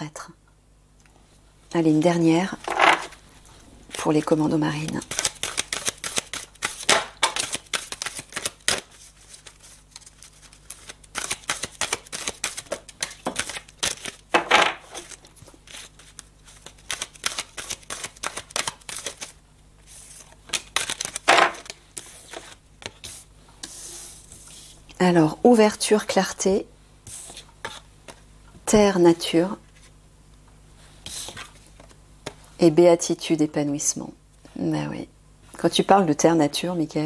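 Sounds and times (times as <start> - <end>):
cards being shuffled: 4.8 - 23.2.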